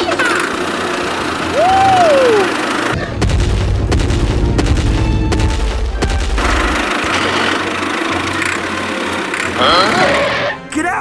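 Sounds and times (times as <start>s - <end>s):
deep rumble: 2.9s - 7.6s
sharp knocks: 3.0s - 8.7s.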